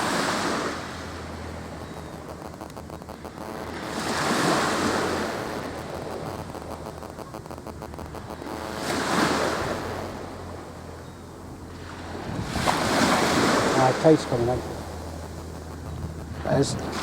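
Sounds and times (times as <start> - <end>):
sea waves surging and washing back: 11.7 - 17.0.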